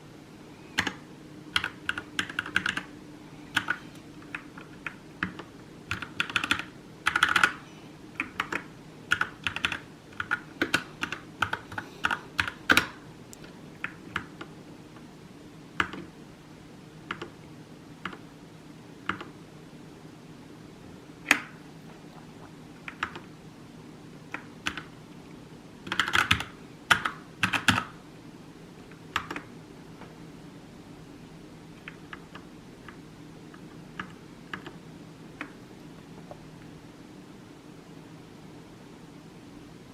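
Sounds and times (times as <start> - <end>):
faint steady hum: 0.0 - 39.9
mechanical keyboard typing: 0.8 - 2.9, 3.5 - 7.6, 8.2 - 13.0, 13.8 - 14.5, 15.8 - 16.1, 17.1 - 17.4, 19.1 - 19.4, 22.8 - 23.3, 24.3 - 24.9, 25.8 - 28.0, 29.1 - 29.5, 34.0 - 34.8.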